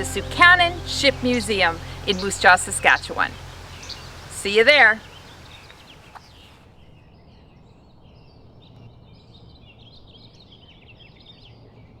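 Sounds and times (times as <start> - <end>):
low background rumble: 0.0 - 5.7.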